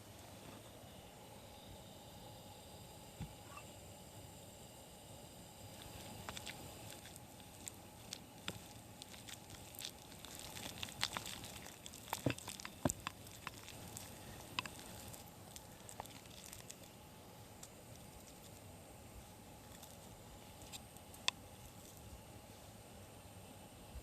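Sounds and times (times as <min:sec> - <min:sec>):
campfire crackling: 0:05.0 - 0:23.0.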